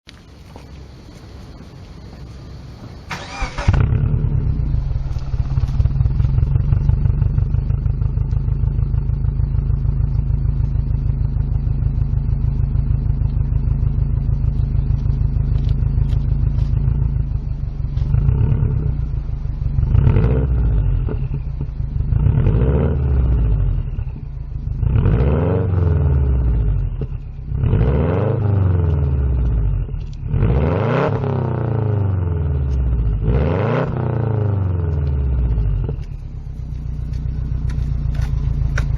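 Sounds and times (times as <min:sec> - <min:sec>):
car engine idling and revving: 0:00.1 - 0:38.9
car engine starting: 0:00.4 - 0:38.9.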